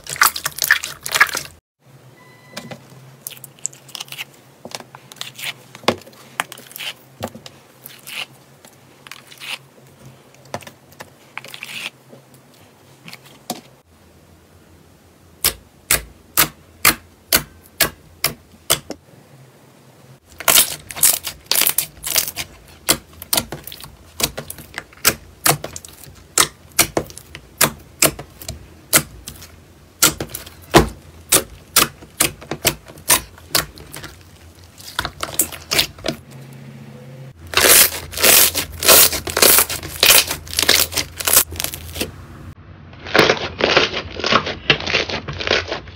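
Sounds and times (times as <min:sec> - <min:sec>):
slime squishing with clicking pops: 0:20.4 - 0:34.2.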